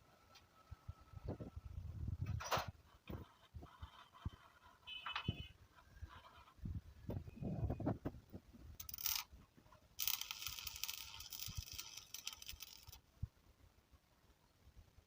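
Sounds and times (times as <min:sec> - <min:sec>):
metal scraping: 0:02.4 - 0:06.6, 0:10.0 - 0:13.0.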